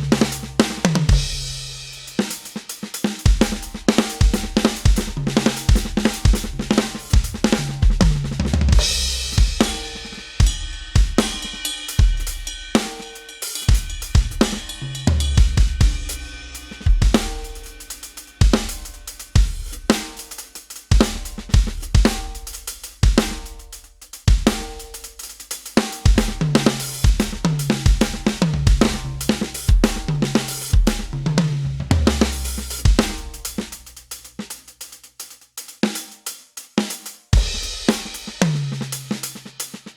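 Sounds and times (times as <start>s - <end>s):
rock drum groove: 0.0s - 39.9s
cymbal crashes: 8.8s - 20.4s.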